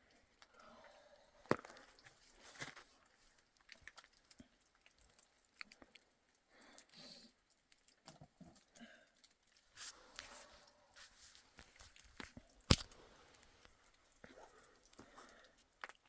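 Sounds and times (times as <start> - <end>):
faint small clicks: 0.0 - 10.8
soft crunches: 1.4 - 4.9, 9.5 - 16.0.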